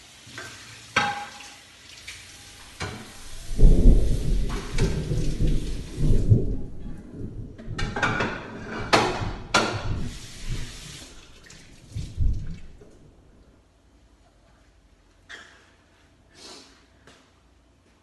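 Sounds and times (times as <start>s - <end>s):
thunder rumbling: 2.7s - 13.6s
thunder cracks: 3.2s - 10.7s, 11.9s - 13.4s.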